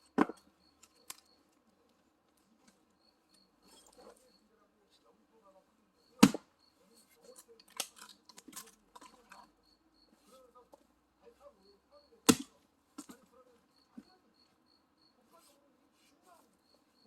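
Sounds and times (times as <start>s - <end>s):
faint high chirp: 0.0s - 7.6s, 9.1s - 12.3s, 13.2s - 17.0s
axe splitting firewood: 0.1s - 1.2s, 6.2s - 6.5s, 7.6s - 9.2s, 12.2s - 13.2s.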